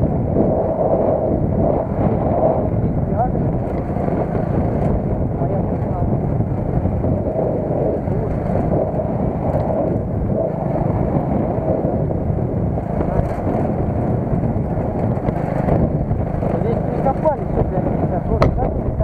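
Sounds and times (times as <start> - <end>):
vehicle engine and road rumble: 0.0 - 19.0
wind on microphone: 0.0 - 19.0.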